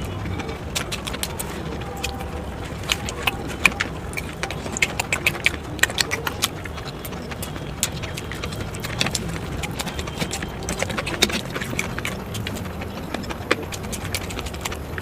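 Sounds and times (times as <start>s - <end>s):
crunchy chewing: 0.0s - 15.0s
low background hum: 0.0s - 15.0s.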